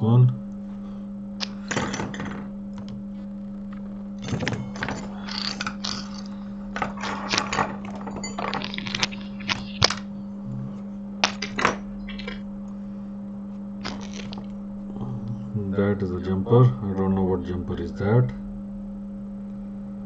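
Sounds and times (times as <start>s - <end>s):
steady low hum: 0.0s - 20.0s
metal tools clicking and clinking: 4.2s - 10.0s.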